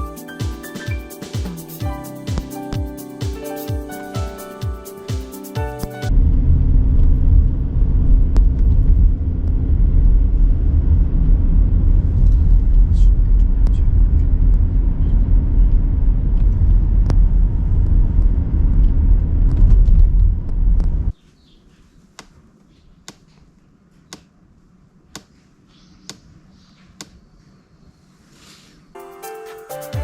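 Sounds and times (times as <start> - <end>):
car engine and road noise: 6.0 - 21.2.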